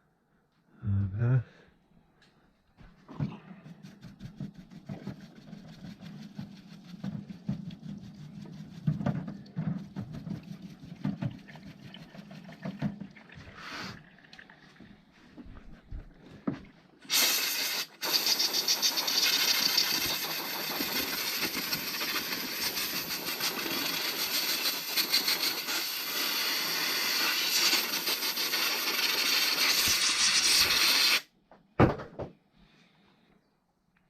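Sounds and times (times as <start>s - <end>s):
pressurised jet hissing: 17.0s - 31.3s.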